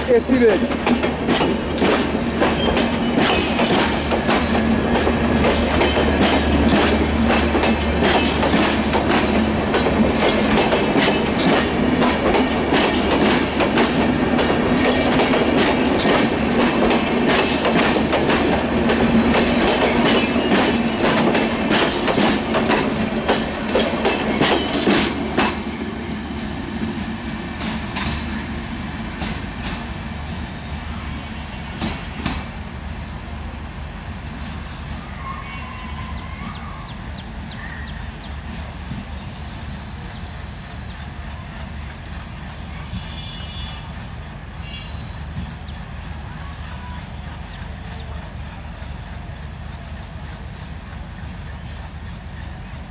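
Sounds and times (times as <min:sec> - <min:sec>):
low hum of train: 0:00.0 - 0:52.9
train wheels clattering over rail joints: 0:00.2 - 0:28.4, 0:29.1 - 0:30.0.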